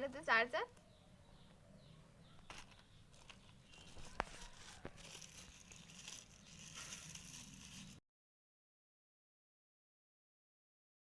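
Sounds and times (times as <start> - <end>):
packaging crinkling: 2.5 - 8.0.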